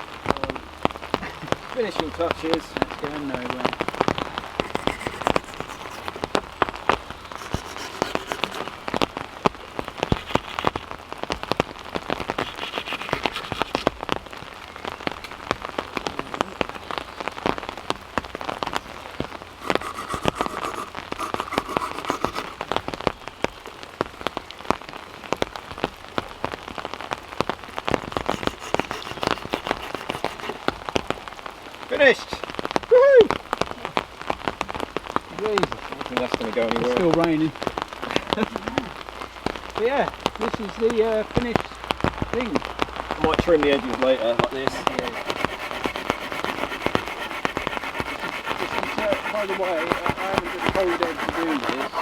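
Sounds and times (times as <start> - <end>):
heavy rain falling: 0.0 - 4.7
raindrops hitting close by: 0.0 - 19.7, 22.6 - 28.6, 30.6 - 45.0.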